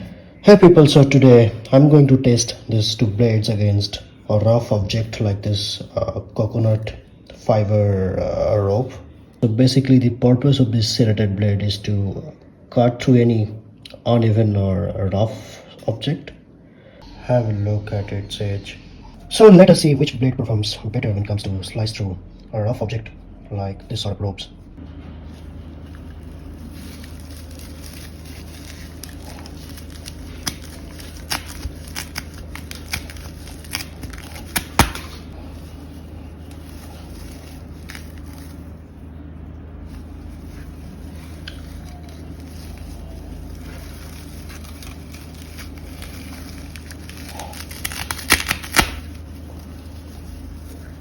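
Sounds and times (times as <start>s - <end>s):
knife cutting rope fibres crackling: 26.7s - 35.3s, 40.5s - 49.6s.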